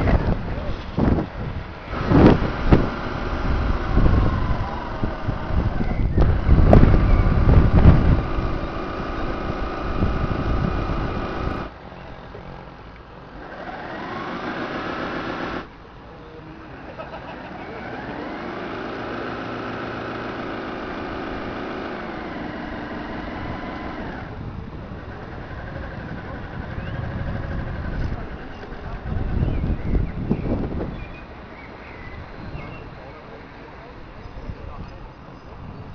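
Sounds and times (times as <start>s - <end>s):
wind rumble on microphone: 0.0s - 11.7s, 22.6s - 31.4s, 33.8s - 35.9s
whining drive motors: 0.0s - 35.9s.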